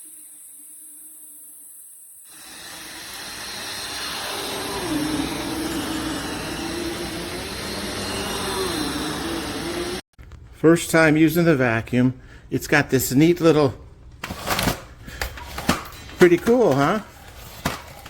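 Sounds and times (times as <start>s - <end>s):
upright vacuum cleaner running: 2.3s - 10.0s.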